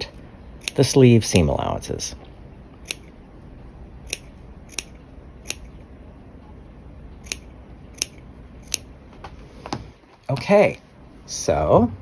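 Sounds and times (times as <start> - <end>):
scissors snipping fabric: 4.1 - 5.7.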